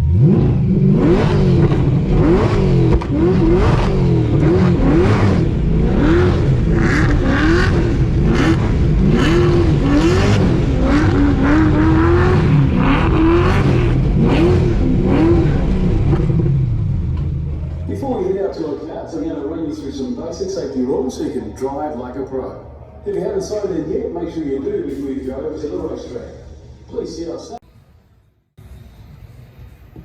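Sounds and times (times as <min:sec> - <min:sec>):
car engine revving hard: 0:00.0 - 0:17.1.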